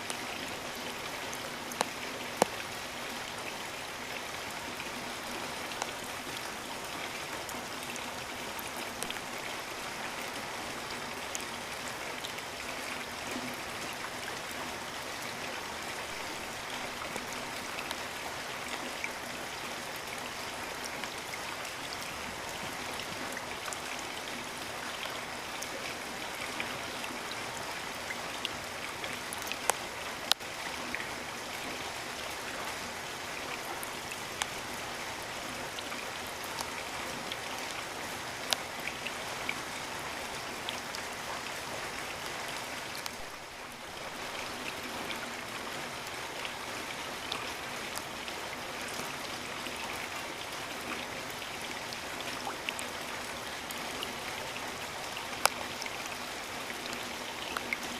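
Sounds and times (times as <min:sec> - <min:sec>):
steady rain hiss: 0:00.0 - 0:57.9
sharp water drips: 0:15.3 - 0:45.3.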